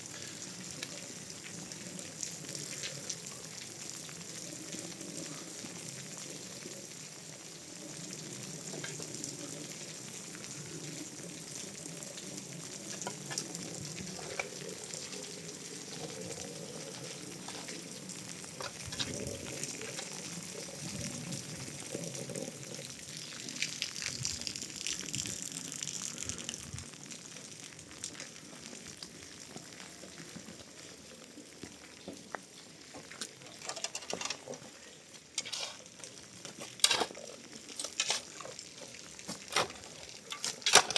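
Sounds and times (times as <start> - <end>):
food sizzling in a pan: 35.2 - 36.2.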